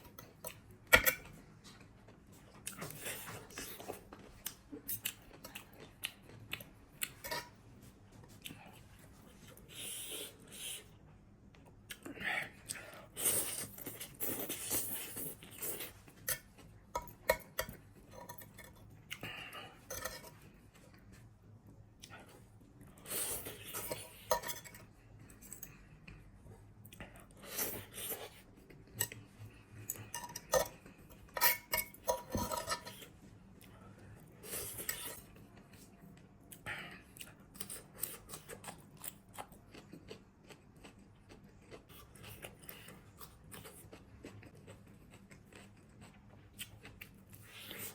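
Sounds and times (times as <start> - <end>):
cutlery clinking on dishes: 0.9 - 1.3, 23.9 - 24.8, 30.1 - 33.0.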